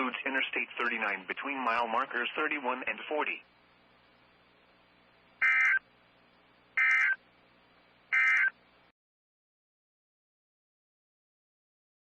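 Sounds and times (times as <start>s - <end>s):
faint hiss and hum: 0.0s - 8.9s
digital data tone bursts: 5.4s - 5.8s, 6.8s - 7.2s, 8.1s - 8.6s.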